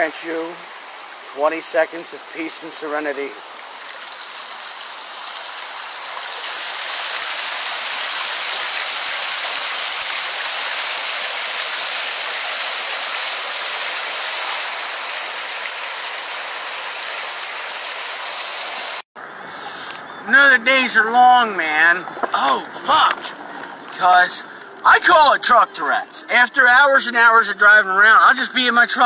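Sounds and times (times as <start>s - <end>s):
running water rushing: 0.0s - 19.1s.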